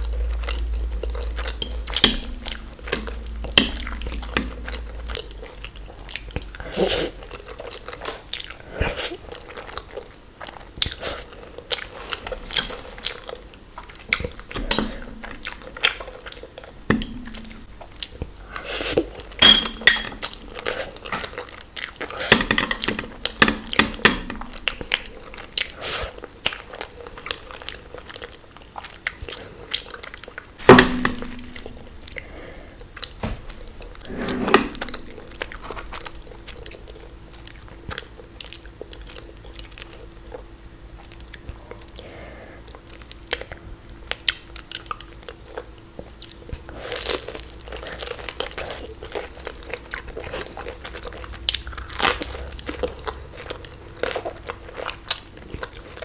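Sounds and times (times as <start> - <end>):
crunchy chewing: 0.0 - 19.4, 31.4 - 56.0.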